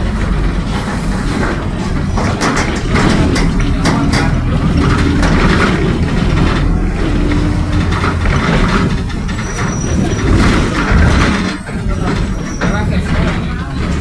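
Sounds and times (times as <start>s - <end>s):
bus engine and road noise: 0.0s - 14.0s
differential growling: 2.8s - 11.5s.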